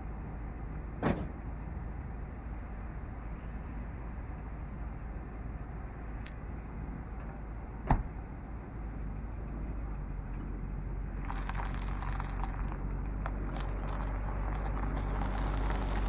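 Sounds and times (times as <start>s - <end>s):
car engine droning: 0.0s - 16.0s
crackling noise: 10.7s - 16.0s.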